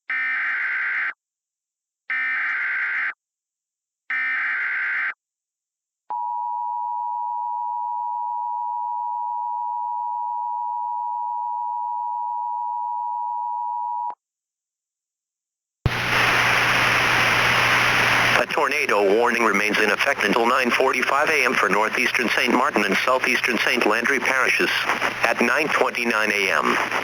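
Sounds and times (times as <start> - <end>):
static hiss with low hum: 15.9 - 27.0.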